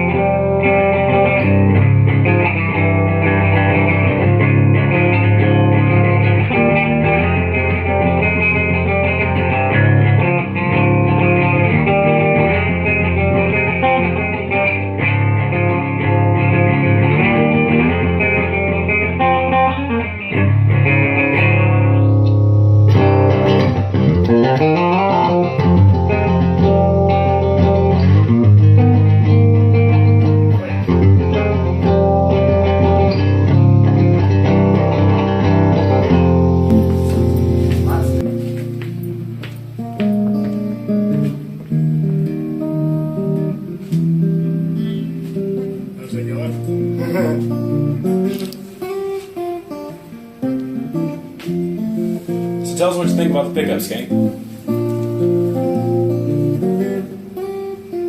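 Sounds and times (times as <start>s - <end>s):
electric guitar riffs: 0.0s - 58.0s.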